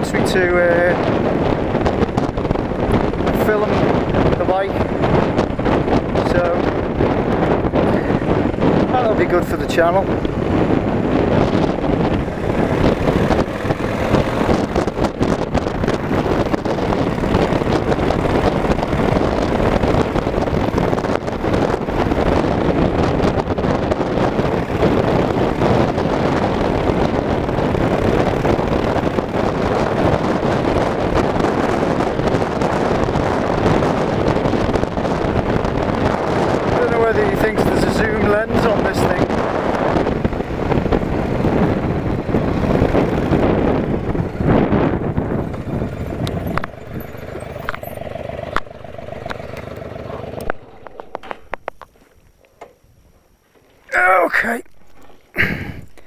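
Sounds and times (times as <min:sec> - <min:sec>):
motorcycle engine running: 0:00.0 - 0:52.8
wind buffeting microphone: 0:00.0 - 0:56.0.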